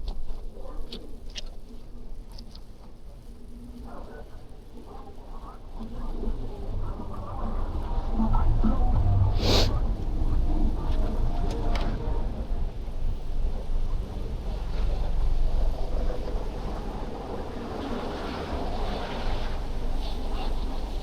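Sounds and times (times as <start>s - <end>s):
wind rumbling on microphone: 0.0s - 21.0s
street traffic: 5.6s - 14.7s.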